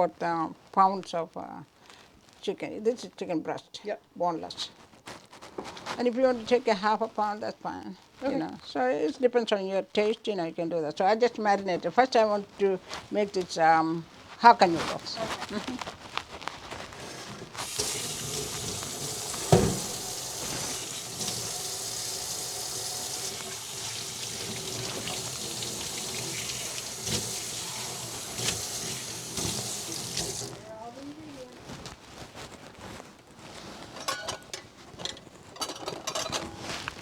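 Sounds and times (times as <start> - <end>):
kitchen tap running: 17.6 - 30.6.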